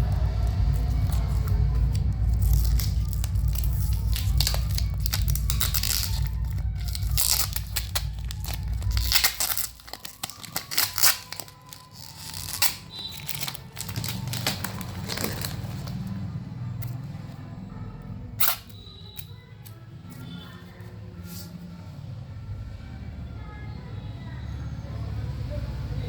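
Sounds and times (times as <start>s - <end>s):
plastic packaging tearing and crinkling: 0.0s - 16.2s, 18.4s - 19.8s
background music: 0.0s - 23.7s.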